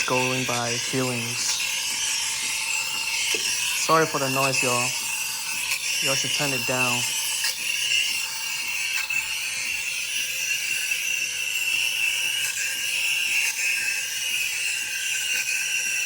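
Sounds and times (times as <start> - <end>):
steam wand hissing: 0.0 - 11.0.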